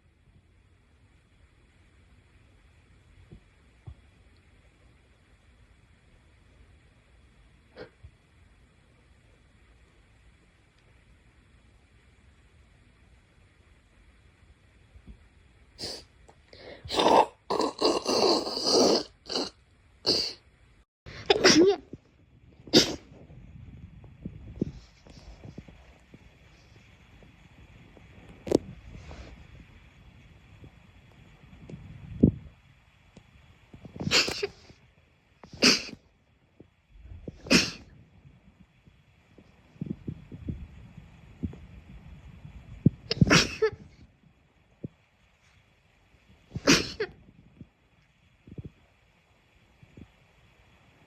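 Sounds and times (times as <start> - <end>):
gasping in-breaths: 16.5 - 17.0
person sneezing: 22.7 - 23.1, 34.0 - 34.6, 35.6 - 36.0, 37.4 - 37.9, 43.1 - 43.7, 46.6 - 47.1
sharp sneezes: 22.7 - 23.1, 46.6 - 47.0.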